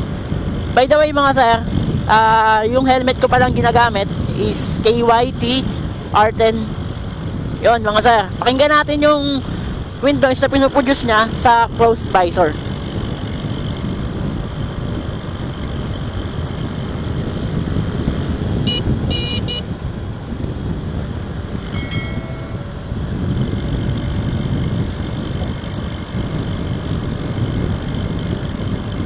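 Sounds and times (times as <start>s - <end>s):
wind buffeting microphone: 0.0s - 29.0s
brief pitched tone: 18.7s - 19.7s, 21.7s - 22.8s
short high beeps: 18.7s - 19.7s.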